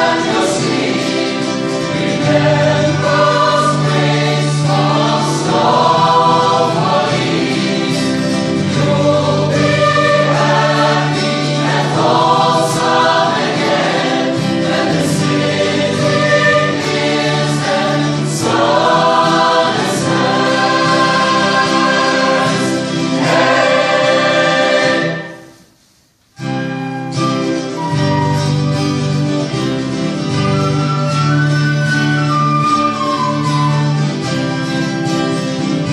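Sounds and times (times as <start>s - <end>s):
choir singing: 0.0s - 25.6s.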